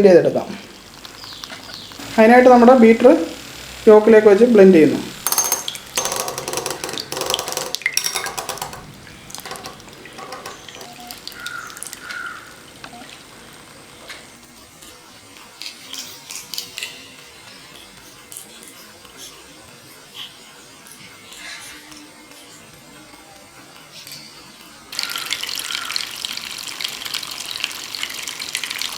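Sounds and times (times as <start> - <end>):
electric egg beater whisking: 0.6 - 14.5
faint clicks and taps: 5.2 - 11.5
clattering and splashing: 5.2 - 12.1.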